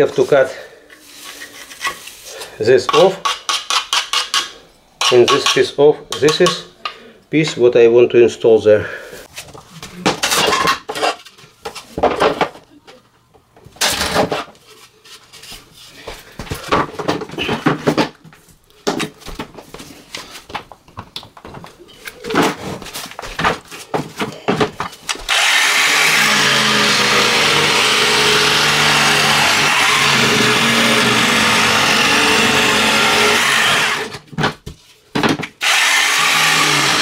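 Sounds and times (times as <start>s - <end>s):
electric power tool cutting: 25.3s - 34.2s, 35.6s - 37.0s.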